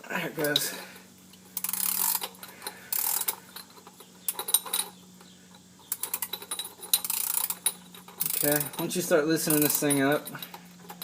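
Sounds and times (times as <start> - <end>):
socket wrench ratchet clicking: 1.6 - 4.9, 5.9 - 8.9, 9.5 - 11.0.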